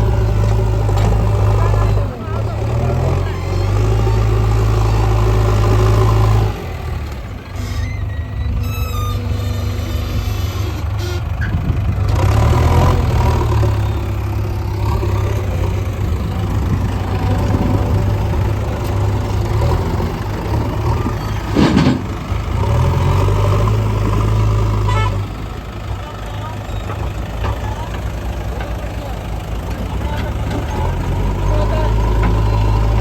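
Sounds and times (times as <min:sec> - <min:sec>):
diesel engine revving: 0:00.0 - 0:33.0.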